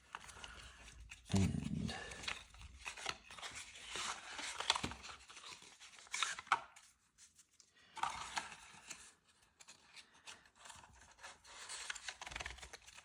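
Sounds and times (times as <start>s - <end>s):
cards and cardboard rustling: 0.0s - 13.0s.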